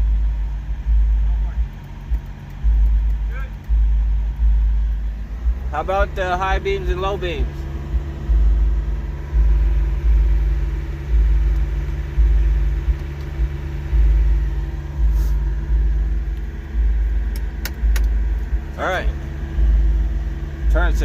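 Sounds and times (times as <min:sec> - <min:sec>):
truck engine idling: 0:00.0 - 0:21.0
sharp clicks: 0:01.6 - 0:03.9, 0:17.2 - 0:18.5.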